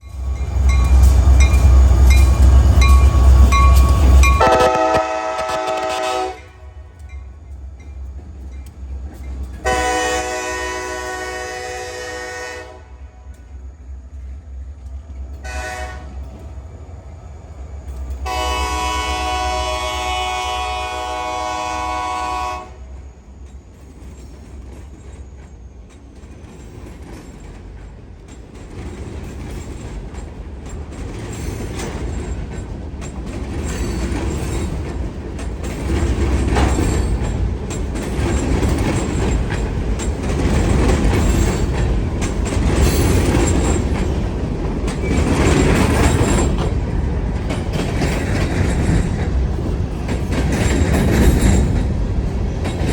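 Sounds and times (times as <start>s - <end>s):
locomotive horn chord: 4.4s - 6.9s, 9.6s - 13.3s, 15.4s - 16.2s, 18.2s - 22.8s.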